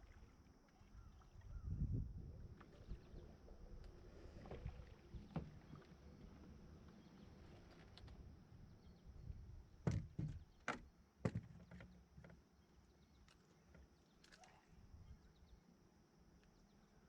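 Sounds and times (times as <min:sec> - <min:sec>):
sharp knocks and clicks: 0:09.9 - 0:12.0.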